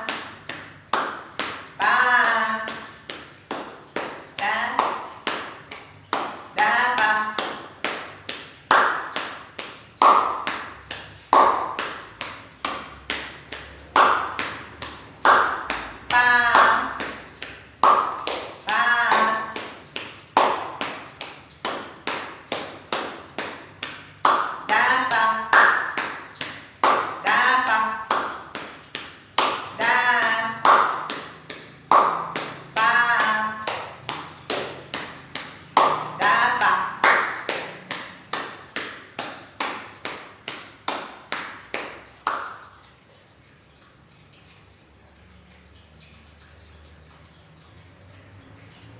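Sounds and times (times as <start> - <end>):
body percussion tapping: 0.0 - 42.7
person chanting syllables: 1.8 - 3.0, 4.4 - 5.0, 6.5 - 7.5, 16.0 - 17.2, 18.6 - 19.7, 24.6 - 25.5, 27.2 - 28.1, 29.7 - 30.8, 32.6 - 33.9, 35.9 - 37.1.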